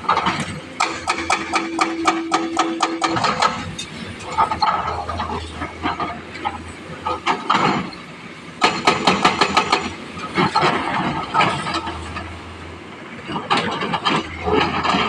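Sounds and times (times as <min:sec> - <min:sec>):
excavator engine running: 0:00.0 - 0:15.0.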